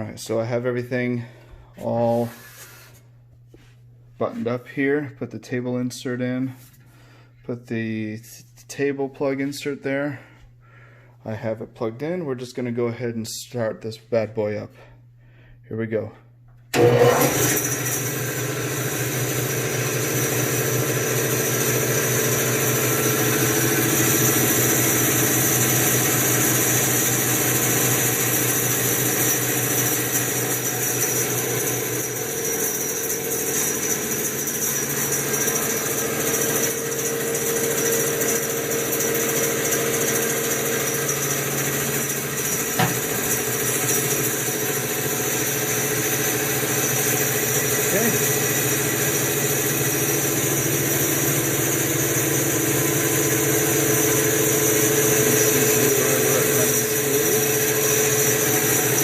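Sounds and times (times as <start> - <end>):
bandsaw running free: 16.8 - 59.0.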